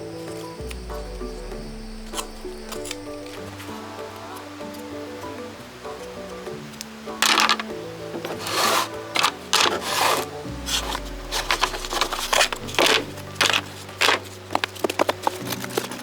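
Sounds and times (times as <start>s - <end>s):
background music with low notes: 0.0s - 16.0s
rough rubbing scrapes: 8.2s - 16.0s.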